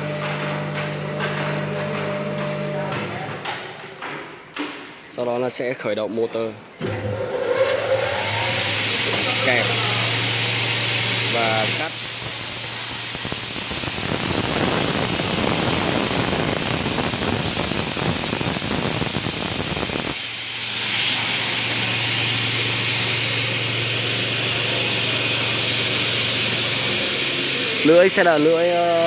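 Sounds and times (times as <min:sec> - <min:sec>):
machine humming and hissing: 0:06.8 - 0:29.0
saw cutting aluminium: 0:06.9 - 0:29.0.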